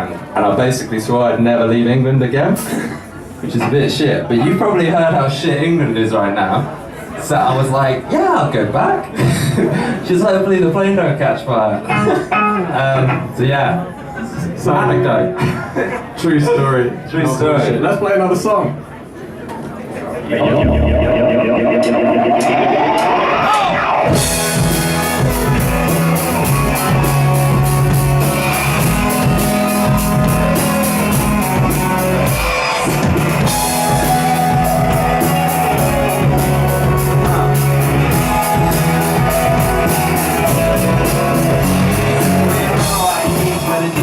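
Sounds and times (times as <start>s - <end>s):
live rock band playing: 20.3s - 44.0s.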